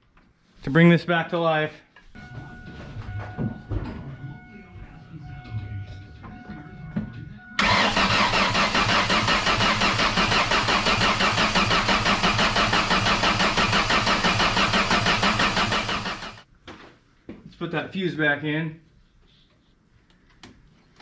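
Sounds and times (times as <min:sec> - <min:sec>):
engine cranking on starter motor: 0:07.6 - 0:16.4.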